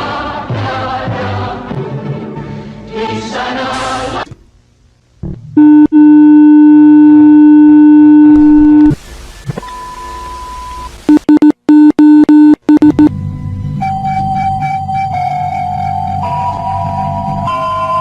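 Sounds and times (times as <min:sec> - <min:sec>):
higher electronic beep: 0:09.7 - 0:13.1.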